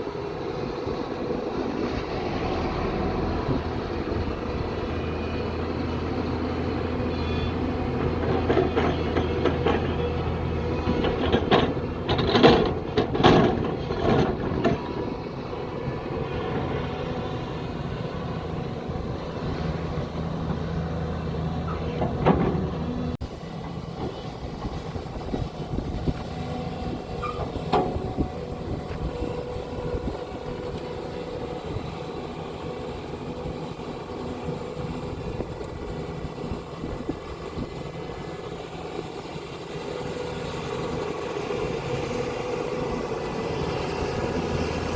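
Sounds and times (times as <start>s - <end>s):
excavator diesel engine running: 0.0s - 44.9s
knocks and clanks: 8.0s - 10.1s, 10.8s - 15.0s, 21.9s - 22.9s.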